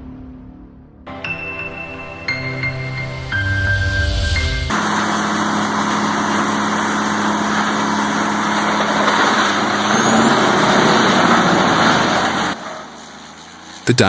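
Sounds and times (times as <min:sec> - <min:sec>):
engine drone: 0:00.0 - 0:01.2, 0:01.8 - 0:14.0
wood grinding and shredding: 0:04.7 - 0:14.0.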